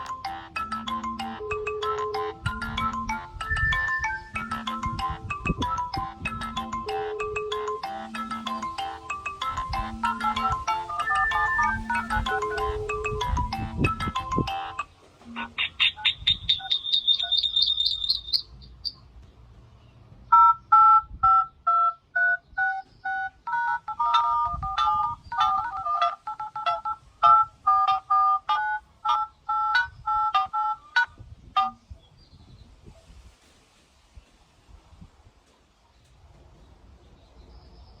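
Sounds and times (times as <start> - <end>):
phone ringtone beeps: 0.0 - 18.5, 20.3 - 31.8.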